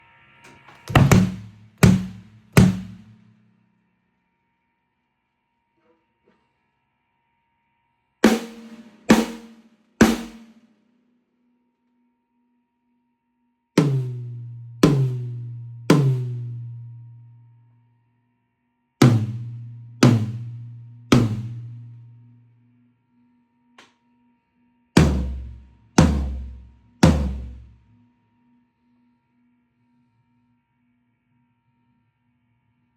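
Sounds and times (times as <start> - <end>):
toms ringing: 0.8 - 3.1
drum strikes: 0.8 - 3.2, 8.2 - 10.6, 13.8 - 17.1, 19.0 - 22.1, 25.0 - 27.8
bass drum thumps: 0.9 - 3.2, 13.8 - 17.1, 19.0 - 22.0, 25.0 - 27.8.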